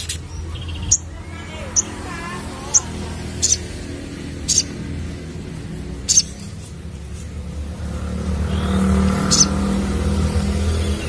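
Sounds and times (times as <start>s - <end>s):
bird chirp: 0.0s - 11.0s
passing engine hum: 0.0s - 11.0s.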